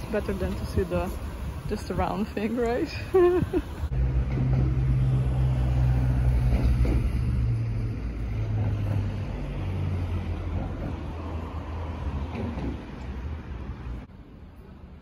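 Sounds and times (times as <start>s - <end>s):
vehicle engine humming: 0.0s - 14.4s.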